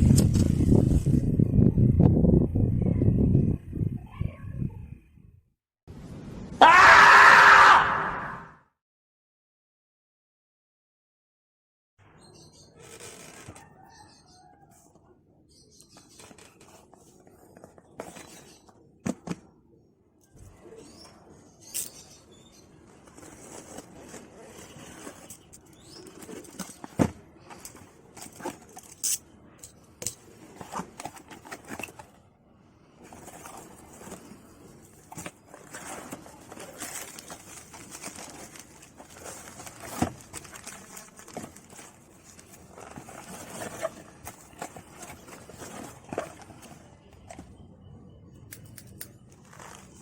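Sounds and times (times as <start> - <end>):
plastic and paper wrapping rustling: 12.8 - 13.9, 22.7 - 29.1, 30.2 - 32.3, 33.0 - 47.5, 49.2 - 50.0.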